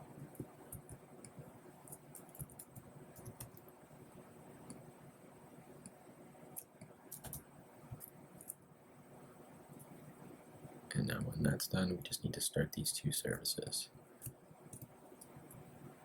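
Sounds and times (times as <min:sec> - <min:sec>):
typing on computer keyboard: 0:00.2 - 0:03.7, 0:06.6 - 0:07.4, 0:14.2 - 0:15.6.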